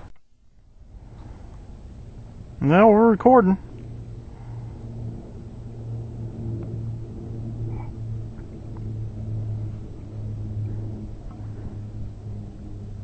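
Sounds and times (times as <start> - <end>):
engine humming: 0.0 - 13.0.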